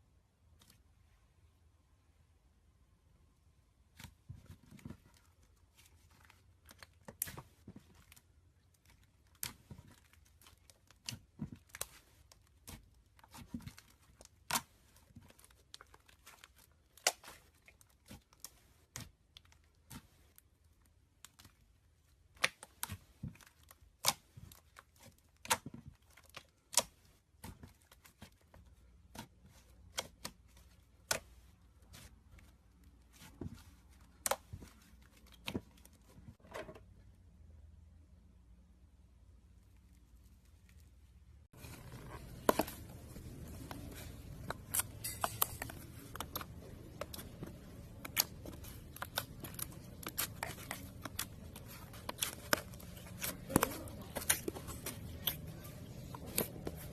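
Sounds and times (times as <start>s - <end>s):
slime tearing: 41.6s - 56.9s.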